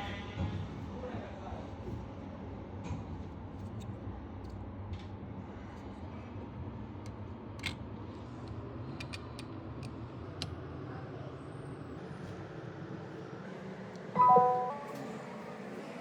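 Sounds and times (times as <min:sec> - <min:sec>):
small tools clicking and tapping: 0:08.4 - 0:10.5.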